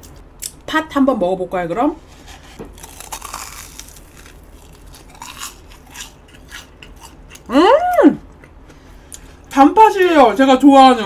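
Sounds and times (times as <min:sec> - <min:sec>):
biting and chewing food: 0:02.6 - 0:07.5
person humming mmm: 0:07.5 - 0:08.2.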